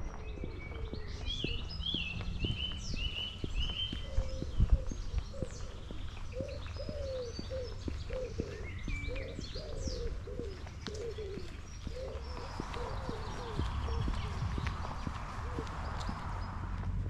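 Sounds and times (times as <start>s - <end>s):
birds chirping: 0.0s - 17.0s
steady low rumble: 0.0s - 17.0s
pigeon cooing: 4.1s - 14.5s.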